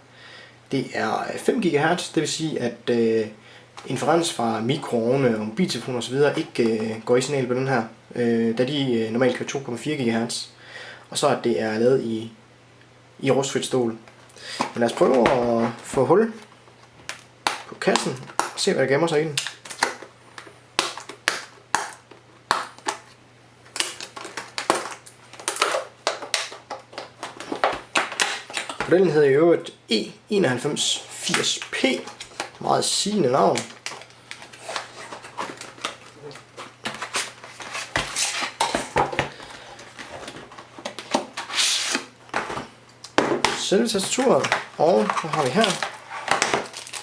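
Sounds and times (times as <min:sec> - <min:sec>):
packaging rustling scrapes: 0:33.6 - 0:42.7, 0:43.4 - 0:47.0.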